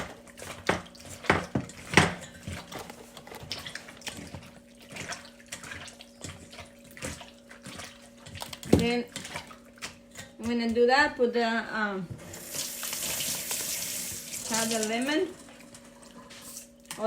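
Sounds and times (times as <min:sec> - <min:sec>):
wet squishing of meat: 0:00.0 - 0:10.4.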